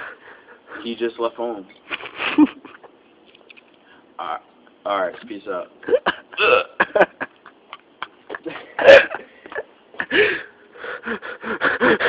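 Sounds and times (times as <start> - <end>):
man hiccuping: 6.3 - 6.8, 8.8 - 9.2.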